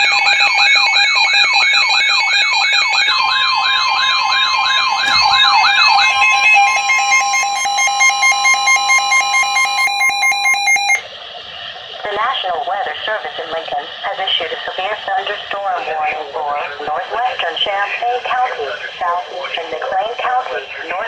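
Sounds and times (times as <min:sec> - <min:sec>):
siren-like alarm falling sweeps: 0:00.0 - 0:11.1
steady alert tone: 0:03.4 - 0:11.0.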